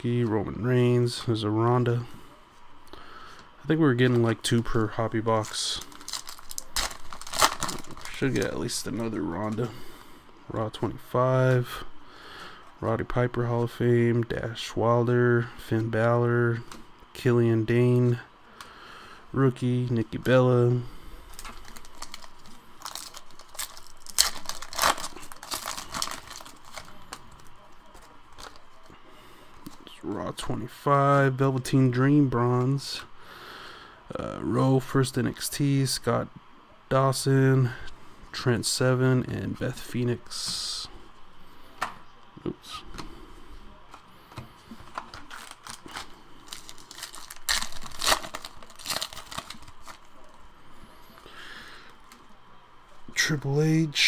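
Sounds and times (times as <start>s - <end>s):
foil wrapper crinkling and tearing: 5.4s - 9.6s, 21.3s - 28.9s, 44.9s - 50.4s.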